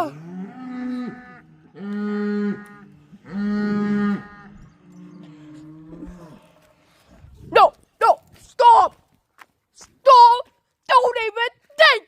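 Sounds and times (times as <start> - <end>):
cattle mooing: 0.0 - 7.1.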